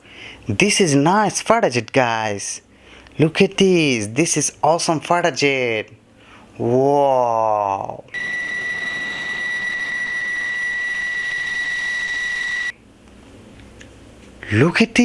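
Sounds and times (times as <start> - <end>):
high-pitched electronic tone: 8.2 - 12.8.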